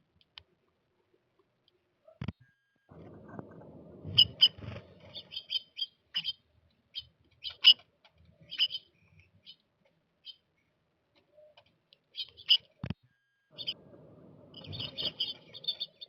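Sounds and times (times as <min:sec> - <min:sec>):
low rumbling noise: 0:02.9 - 0:05.5, 0:13.5 - 0:16.0
small birds chipping: 0:04.1 - 0:12.8, 0:13.5 - 0:16.0.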